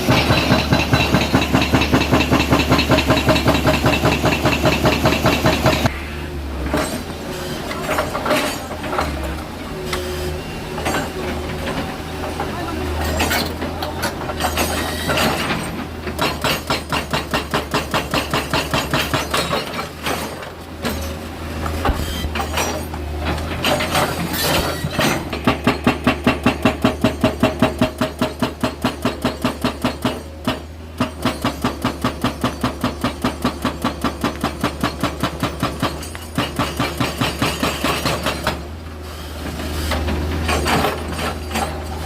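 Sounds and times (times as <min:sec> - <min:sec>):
rapid mechanical hammering: 0:00.0 - 0:05.9.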